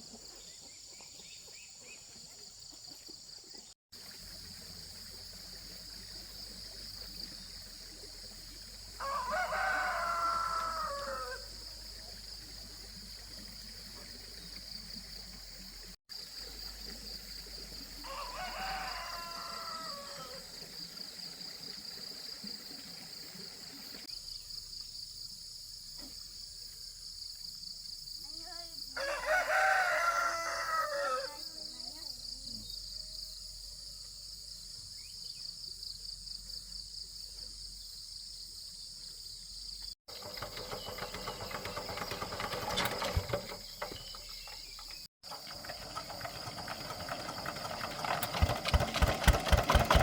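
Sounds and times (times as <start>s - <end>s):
rooster crowing: 9.0s - 11.6s, 18.0s - 20.5s, 29.0s - 31.5s.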